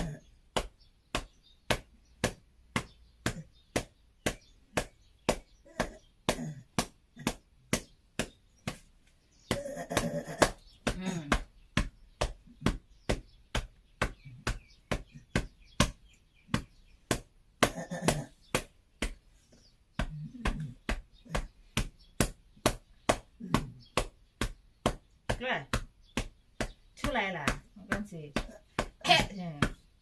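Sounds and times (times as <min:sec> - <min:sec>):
cupped hand patting a back: 0:00.0 - 0:30.0.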